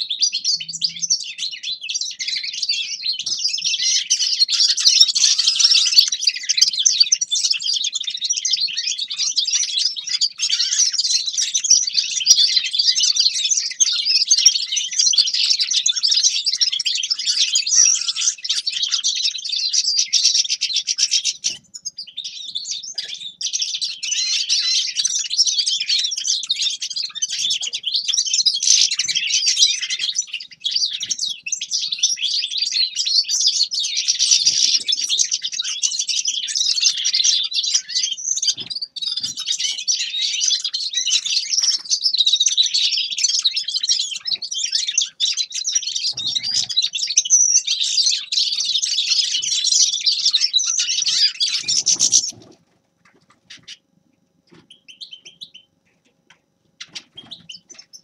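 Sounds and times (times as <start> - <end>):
goldfinch twittering song: 0.0 - 52.5, 54.6 - 55.7, 56.8 - 58.0.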